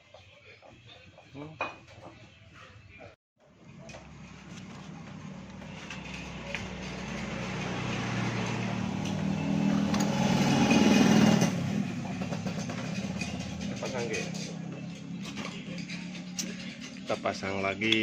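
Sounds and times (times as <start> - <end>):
vehicle engine running: 3.4 - 17.8.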